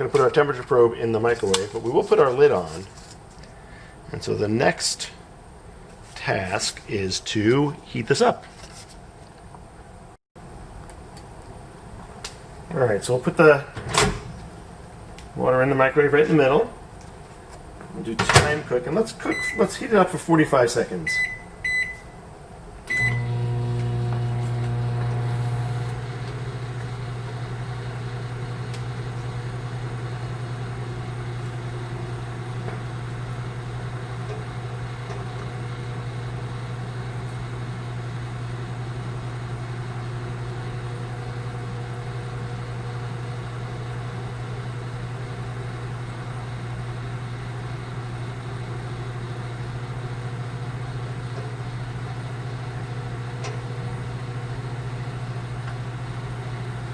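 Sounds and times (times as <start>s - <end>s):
microwave keypad beep: 19.3s - 19.7s, 21.1s - 22.1s, 22.9s - 23.3s
microwave oven humming: 21.0s - 56.9s.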